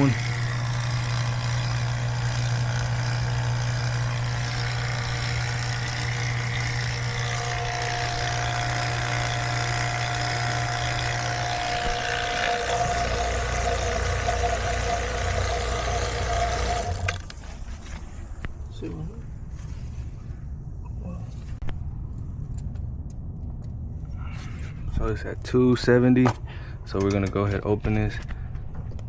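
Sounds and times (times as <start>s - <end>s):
vacuum pump humming: 0.0s - 18.8s.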